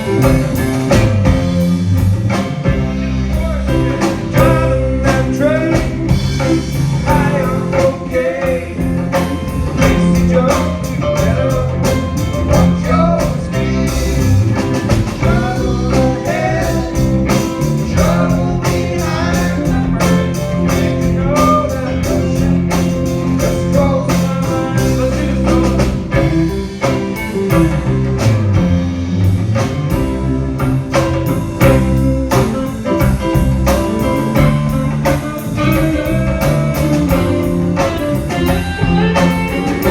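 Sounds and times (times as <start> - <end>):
bass: 0.0 - 39.9
drum hits: 0.0 - 39.9
guitar: 0.0 - 39.9
sung lead vocal: 3.0 - 27.9, 33.9 - 39.9.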